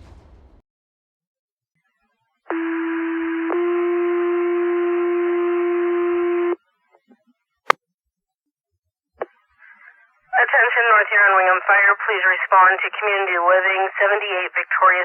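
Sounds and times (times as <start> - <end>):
two-tone radio page: 9.2 - 15.0
radio hiss: 9.6 - 15.0.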